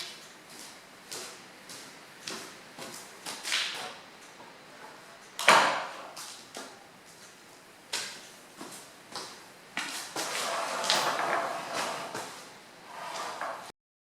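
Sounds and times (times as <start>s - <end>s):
handling knocks and scrapes: 9.8s - 13.7s.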